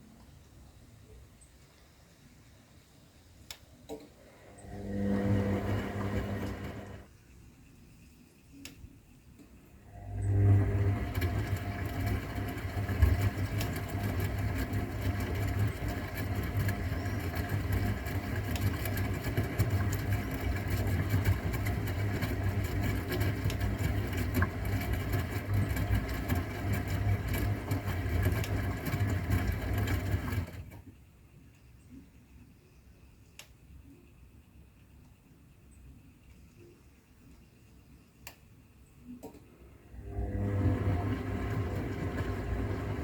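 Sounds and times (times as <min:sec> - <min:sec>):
washing machine drum motor: 0:04.5 - 0:07.1, 0:09.9 - 0:30.9, 0:39.8 - 0:43.0.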